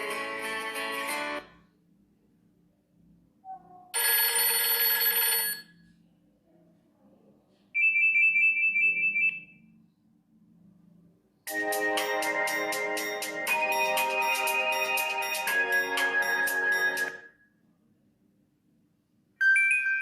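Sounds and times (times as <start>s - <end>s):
phone ringtones: 4.0s - 5.8s, 12.0s - 17.4s, 19.4s - 20.0s.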